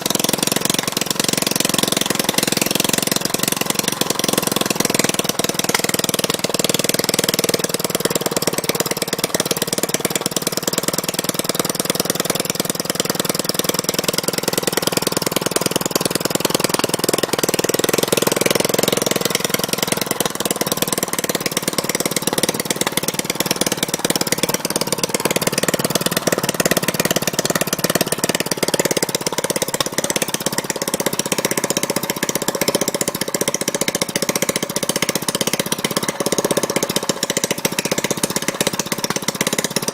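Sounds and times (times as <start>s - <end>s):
small gasoline engine idling: 0.0s - 39.9s.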